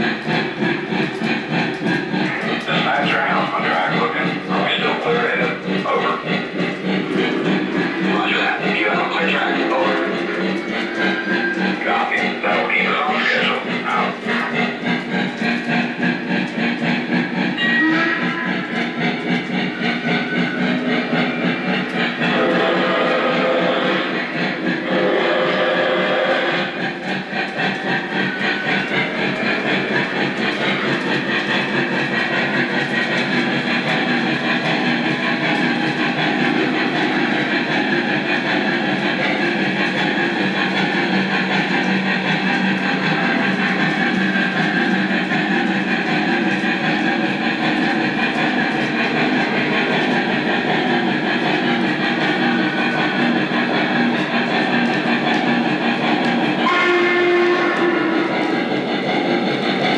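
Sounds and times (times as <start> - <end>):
model train wheels rolling: 0.0 - 59.9
steam locomotive running sound: 0.0 - 59.9
steam whistle chord: 56.6 - 58.3.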